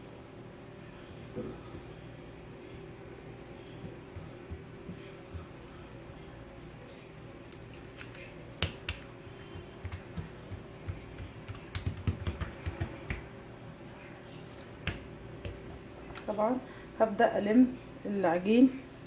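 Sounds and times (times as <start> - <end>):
faint steady hum: 0.0 - 19.0
hands pressing dough on countertop: 3.8 - 6.3, 7.9 - 13.3, 14.7 - 15.8.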